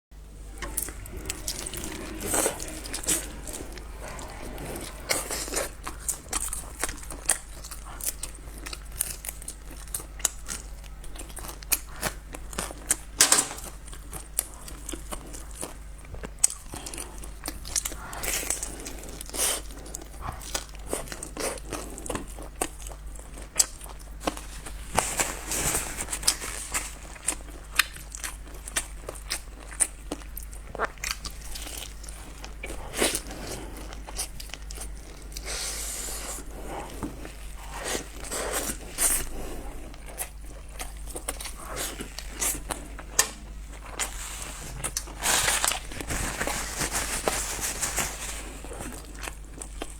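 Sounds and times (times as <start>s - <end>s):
crinkling and crunching: 18.6s - 49.9s.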